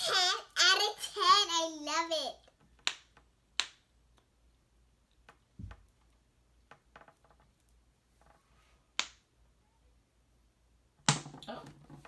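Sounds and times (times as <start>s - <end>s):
fidget toy clicks and taps: 2.5s - 4.3s
soft thump: 5.6s - 5.8s.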